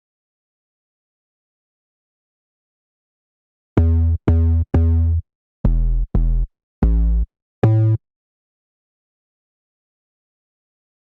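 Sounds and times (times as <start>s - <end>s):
short bass notes: 3.8s - 8.0s.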